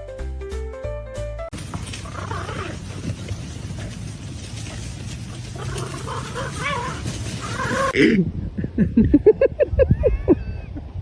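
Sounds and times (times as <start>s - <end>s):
animal wavering calls: 1.6s - 8.0s.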